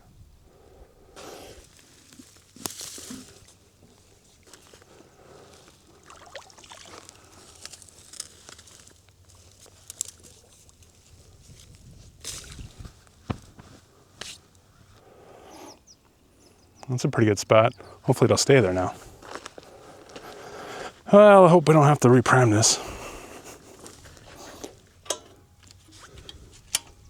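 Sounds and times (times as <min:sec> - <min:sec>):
pond water splashing: 0:01.2 - 0:08.3.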